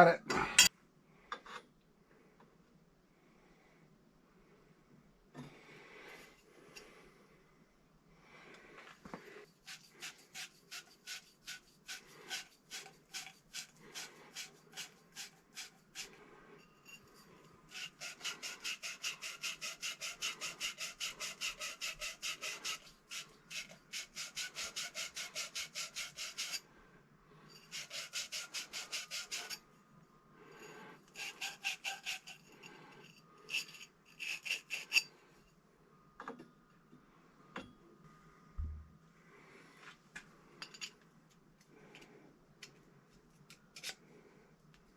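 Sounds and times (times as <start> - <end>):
scrubbing copper pipe: 9.5 - 16.2, 16.9 - 26.6, 27.6 - 29.6, 30.6 - 35.0.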